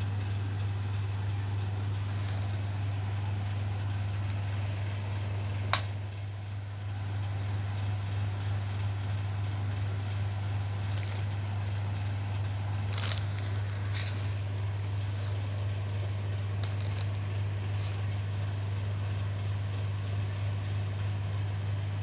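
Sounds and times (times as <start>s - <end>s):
low electrical hum: 0.0s - 22.0s
faint clicks and scrapes: 1.8s - 4.9s, 10.8s - 18.2s.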